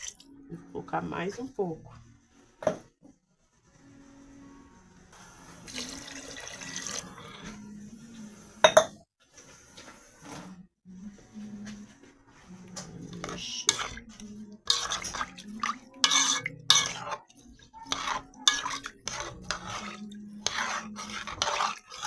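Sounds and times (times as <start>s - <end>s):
spoon scraping a cooking pot: 5.6s - 7.6s, 8.3s - 9.0s, 12.4s - 22.0s.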